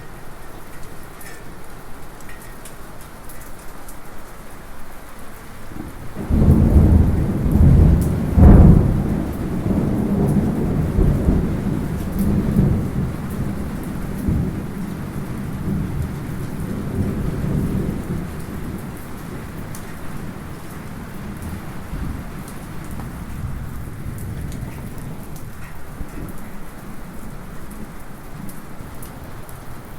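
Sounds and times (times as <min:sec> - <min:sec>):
light rain: 0:00.0 - 0:29.9
small drips ticking: 0:00.6 - 0:04.0
thunder rumbling: 0:05.8 - 0:28.0.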